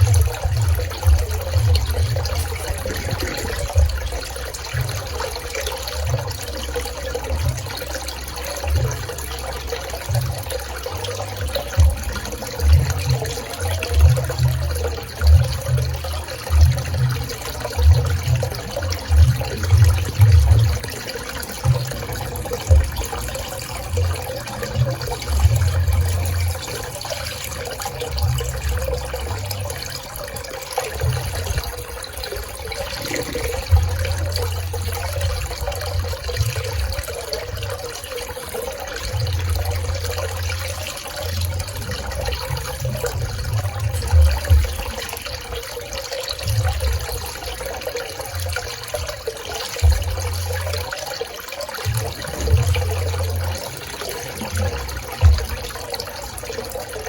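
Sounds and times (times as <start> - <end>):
low rumbles: 0.0 - 7.8, 14.1 - 30.2, 30.9 - 38.2
pool water splashing: 0.0 - 57.0.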